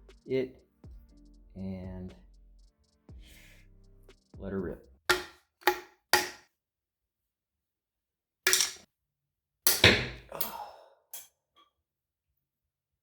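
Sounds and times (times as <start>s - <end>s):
screwdriver prying scrapes and snaps: 5.1s - 6.4s.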